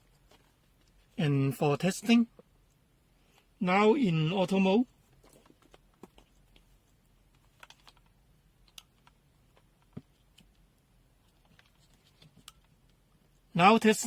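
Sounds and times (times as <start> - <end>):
faint clicks and taps: 5.1 - 13.0.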